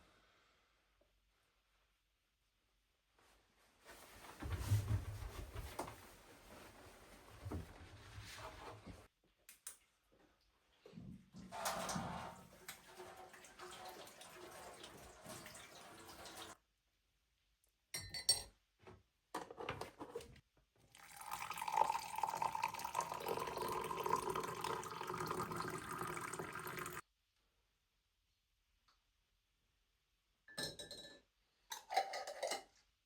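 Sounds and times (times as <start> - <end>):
water running: 11.3 - 16.6, 20.9 - 27.0
water pouring into vessel: 11.6 - 16.6, 20.9 - 27.0.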